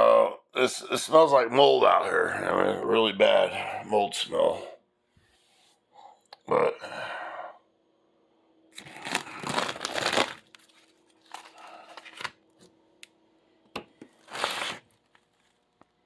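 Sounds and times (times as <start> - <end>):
air filter crinkling and scraping: 8.8 - 12.7, 13.9 - 16.0.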